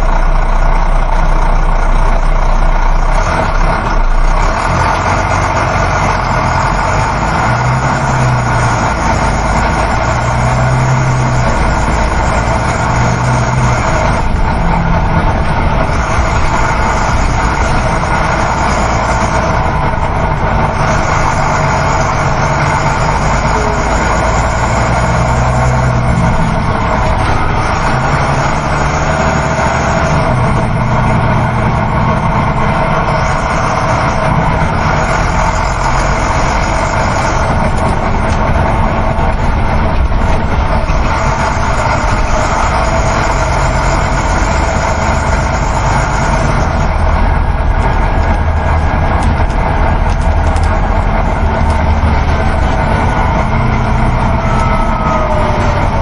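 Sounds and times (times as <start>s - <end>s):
bus engine drone: 0.0s - 56.0s
road and tyre noise: 0.0s - 56.0s.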